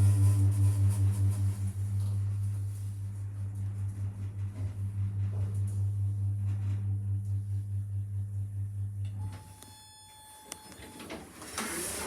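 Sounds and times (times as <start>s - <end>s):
lift machinery humming: 0.0s - 9.6s
electronic lift tone: 0.0s - 11.1s.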